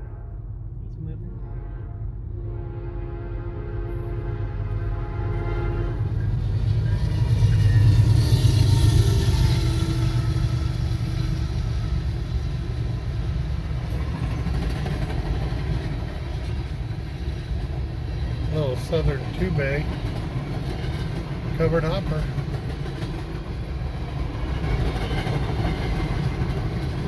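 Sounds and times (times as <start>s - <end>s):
train horn: 0.0s - 0.7s, 1.3s - 11.4s
freight train rumbling past: 0.0s - 27.0s.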